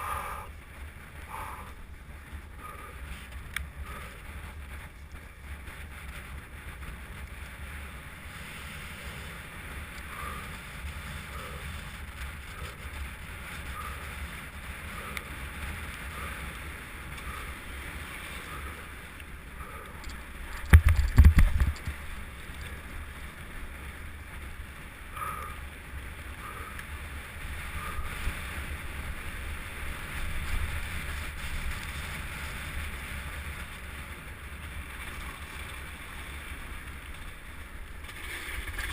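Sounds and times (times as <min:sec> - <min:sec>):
mountain bike rumble: 0:00.0 - 0:38.9
wind on microphone: 0:00.0 - 0:38.9
faint regular clicks: 0:02.6 - 0:05.2, 0:09.6 - 0:22.8.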